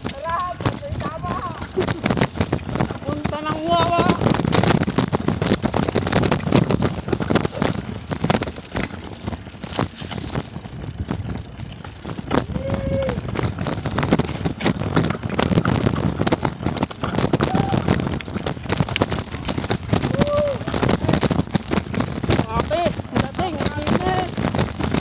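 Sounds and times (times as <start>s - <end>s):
bicycle rattling over dirt trail: 0.0s - 25.0s.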